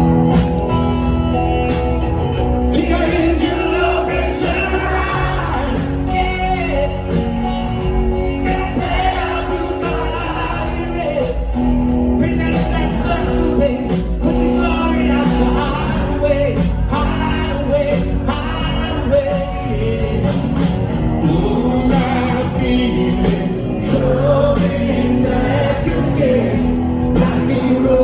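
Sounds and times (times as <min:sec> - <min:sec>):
live rock band: 0:00.0 - 0:28.0
person singing: 0:12.2 - 0:28.0.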